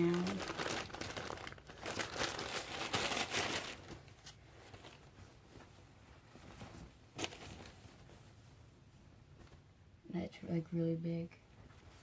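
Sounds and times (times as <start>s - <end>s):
package wrapping crinkling: 0.0s - 5.0s.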